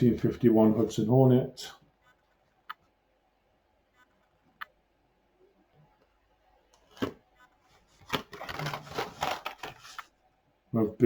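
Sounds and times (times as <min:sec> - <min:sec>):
packaging rustling: 0:08.0 - 0:10.1.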